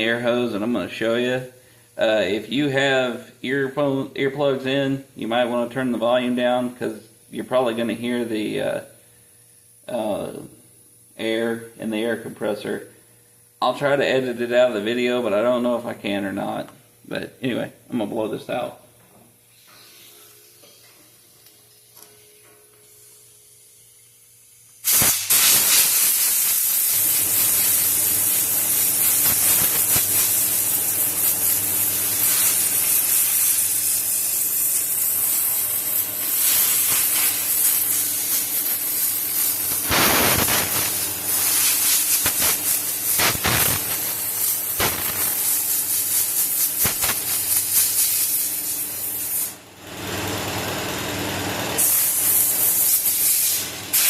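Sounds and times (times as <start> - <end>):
compressed air hissing: 24.7 - 49.6, 51.8 - 54.0.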